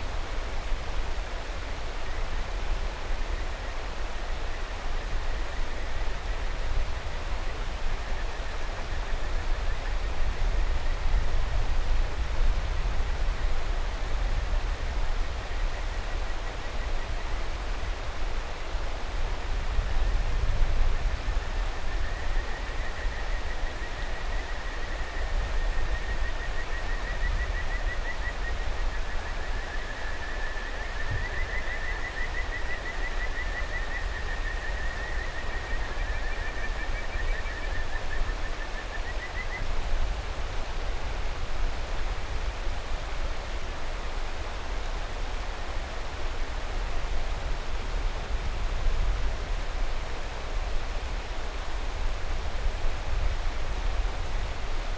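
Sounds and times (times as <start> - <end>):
river rushing: 5.9 - 54.9
frogs trilling: 25.9 - 39.6.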